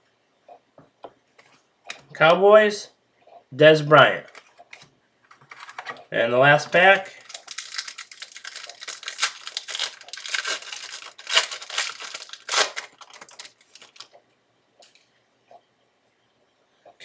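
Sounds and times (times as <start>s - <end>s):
card pack wrapper crinkling: 4.2s - 6.0s, 6.6s - 14.2s.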